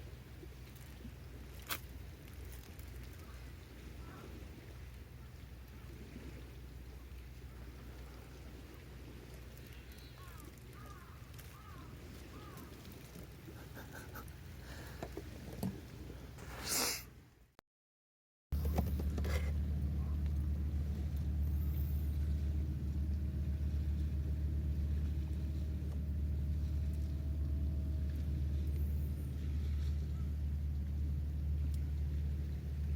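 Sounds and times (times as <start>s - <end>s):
low mechanical drone: 18.6s - 32.9s.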